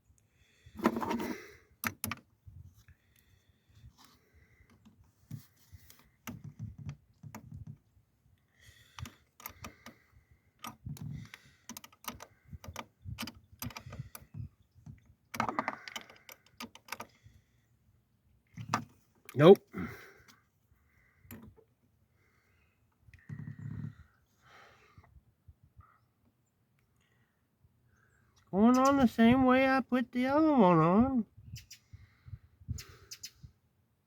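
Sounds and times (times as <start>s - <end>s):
hand tools clicking on metal: 10.6s - 14.3s.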